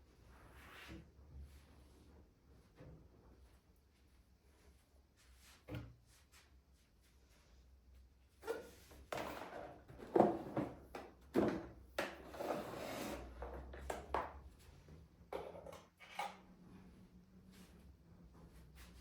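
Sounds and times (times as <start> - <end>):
objects knocking and scraping: 9.0 - 14.4.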